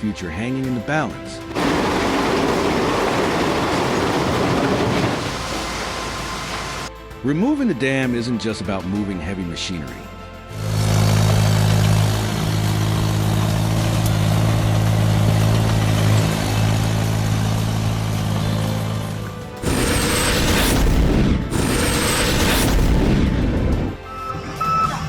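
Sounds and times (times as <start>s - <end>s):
deep machine drone: 1.5s - 6.9s, 10.4s - 24.1s
rushing crashing noise: 1.5s - 6.9s, 19.5s - 24.0s.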